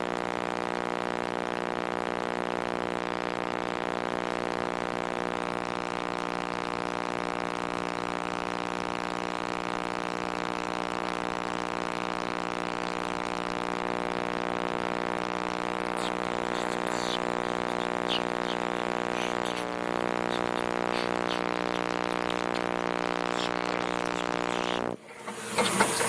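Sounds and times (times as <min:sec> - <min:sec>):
microwave oven humming: 0:00.0 - 0:26.0
sharp crackles: 0:15.4 - 0:25.0.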